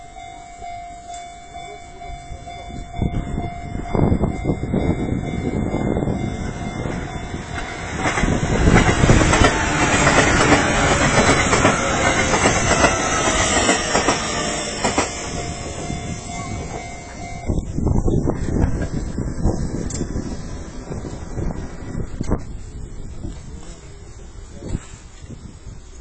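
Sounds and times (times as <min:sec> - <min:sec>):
level crossing warning bell: 0:00.0 - 0:20.4
train wheels clacking over rail joints: 0:06.9 - 0:17.3.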